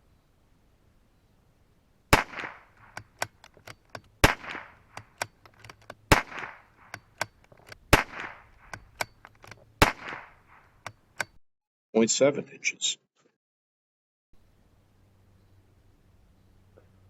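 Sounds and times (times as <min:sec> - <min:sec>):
rifle shots with echo: 0:02.1 - 0:11.3
sharp clicks: 0:02.2 - 0:11.4.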